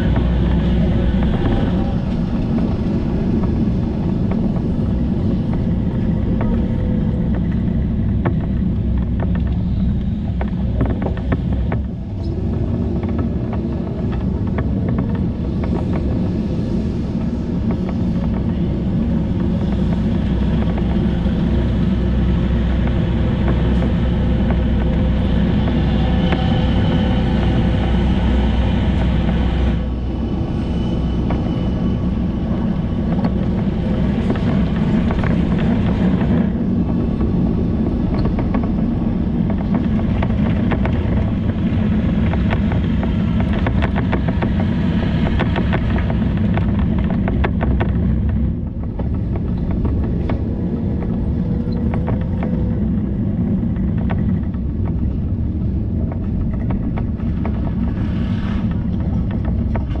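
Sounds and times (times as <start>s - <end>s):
bicycle riding rumble: 0.0s - 60.0s
small clicks and rattles: 33.1s - 60.0s.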